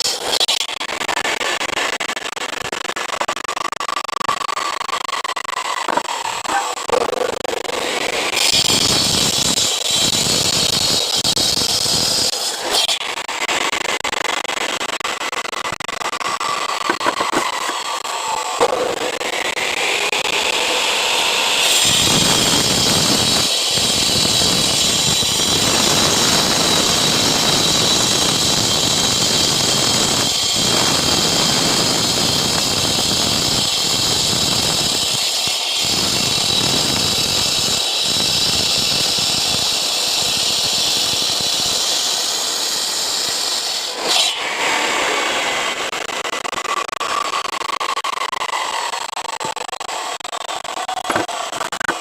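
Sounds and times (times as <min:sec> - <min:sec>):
disc cutter grinding concrete: 0:00.0 - 0:03.2, 0:03.9 - 0:52.0
disc cutter spinning up: 0:16.2 - 0:36.7, 0:43.1 - 0:46.4, 0:51.0 - 0:52.0.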